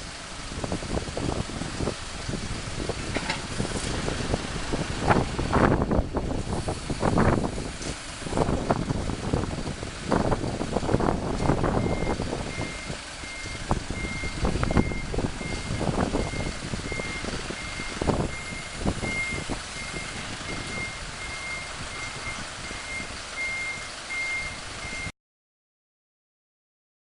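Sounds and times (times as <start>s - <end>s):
truck engine rumble: 0.0s - 25.1s
sharp metal clunks and knocks: 3.1s - 3.5s
reversing beeper: 11.4s - 25.1s.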